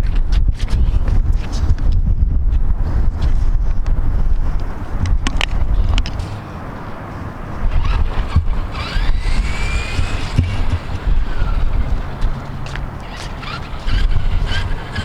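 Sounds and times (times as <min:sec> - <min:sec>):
wind buffeting microphone: 0:00.0 - 0:15.0
electric motor whining: 0:07.7 - 0:15.0.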